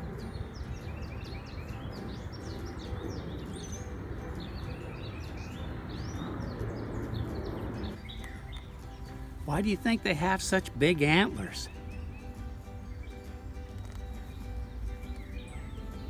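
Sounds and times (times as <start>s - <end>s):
steady rushing noise: 0.0s - 8.0s
birds chirping: 0.0s - 16.0s.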